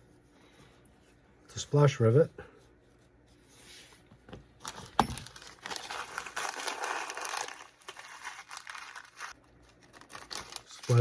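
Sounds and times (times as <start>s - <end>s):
packaging crinkling and rustling: 4.6s - 11.0s.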